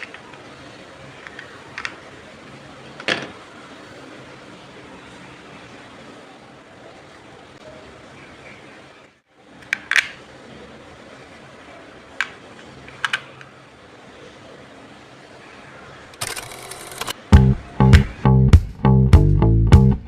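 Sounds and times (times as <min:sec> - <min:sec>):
faint steady hiss: 0:00.0 - 0:18.1.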